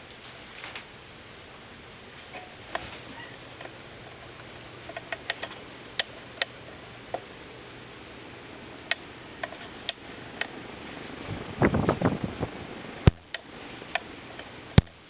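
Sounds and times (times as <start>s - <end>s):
ceiling fan motor hum: 0.0s - 15.0s
rush of air: 10.6s - 13.9s.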